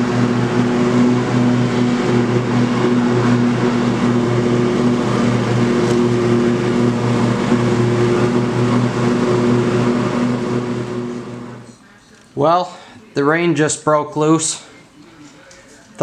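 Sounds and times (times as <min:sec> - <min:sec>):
engine running steadily: 0:00.0 - 0:11.8.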